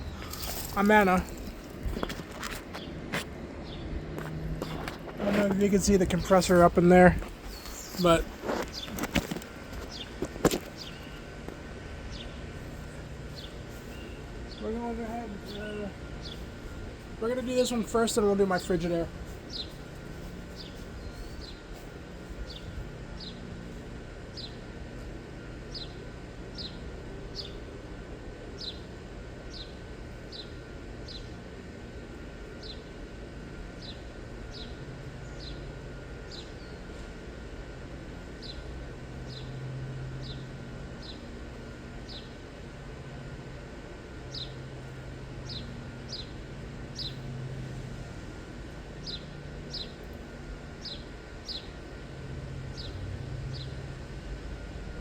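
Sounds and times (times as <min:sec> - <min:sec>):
steady low hum: 0:00.0 - 0:55.0
bird chirping: 0:07.4 - 0:11.3.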